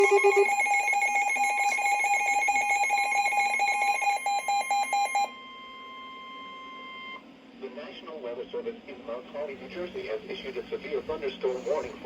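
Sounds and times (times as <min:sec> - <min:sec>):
rapid pulsing alert beep: 0:00.0 - 0:03.1
steady warning alarm tone: 0:00.0 - 0:07.2.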